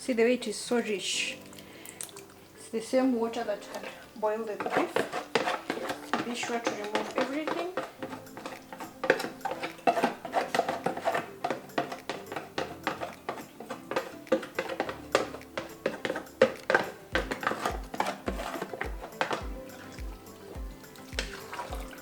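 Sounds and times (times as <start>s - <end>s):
background music with low beat: 3.4s - 22.0s.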